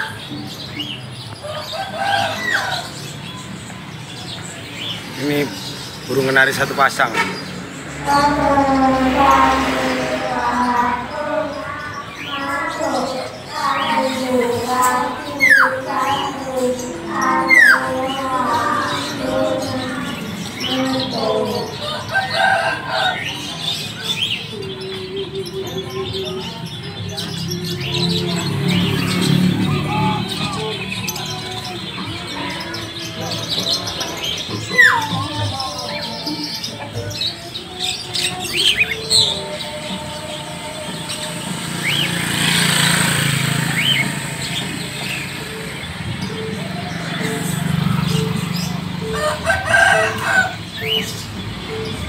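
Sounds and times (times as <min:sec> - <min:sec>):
birds chirping and twittering: 0:00.0 - 0:52.0
rooster crowing: 0:01.4 - 0:03.1, 0:21.6 - 0:23.5, 0:49.0 - 0:51.1.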